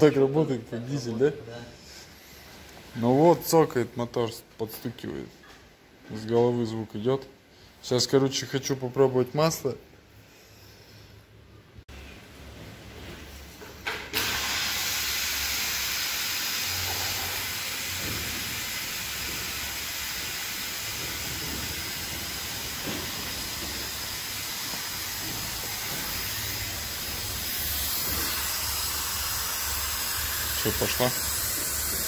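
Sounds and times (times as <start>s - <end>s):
compressed air hissing: 14.1s - 32.0s.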